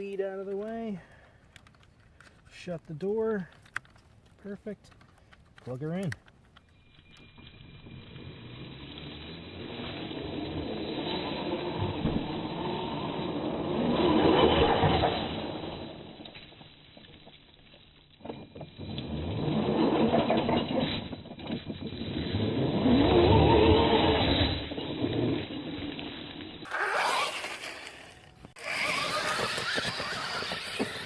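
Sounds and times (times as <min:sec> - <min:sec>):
electric motor whining: 0:07.2 - 0:16.2, 0:26.7 - 0:31.0.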